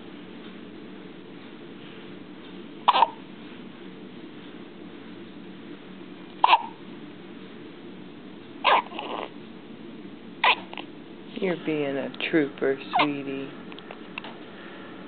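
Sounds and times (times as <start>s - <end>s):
baby hiccuping: 2.9s - 3.2s, 6.4s - 6.8s, 8.6s - 9.3s, 10.4s - 10.9s.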